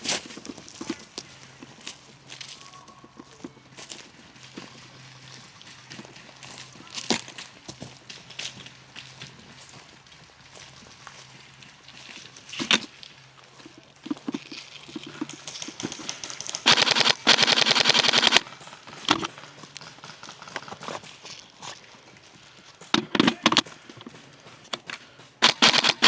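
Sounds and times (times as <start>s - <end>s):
airsoft rifle firing bursts: 15.5s - 19.3s, 25.4s - 26.0s.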